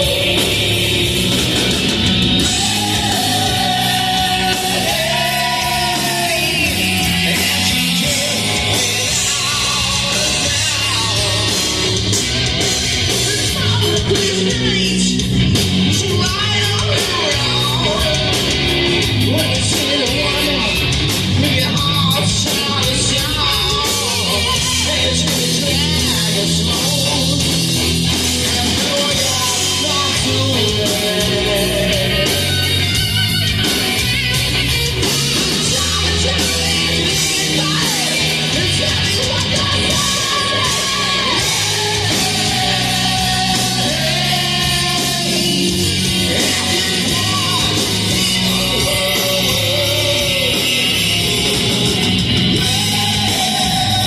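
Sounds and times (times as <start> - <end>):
person singing: 0.0 - 1.7, 2.4 - 12.2, 28.4 - 32.7, 35.0 - 51.9, 52.5 - 54.0
bass guitar notes: 0.0 - 54.0
distorted electric guitar: 0.0 - 54.0
drums: 0.0 - 54.0.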